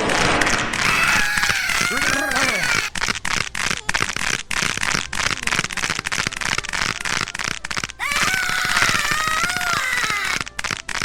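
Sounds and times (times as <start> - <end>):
knuckles cracking: 0.3 - 11.0
person's high-pitched cry: 0.9 - 2.9, 8.0 - 10.5.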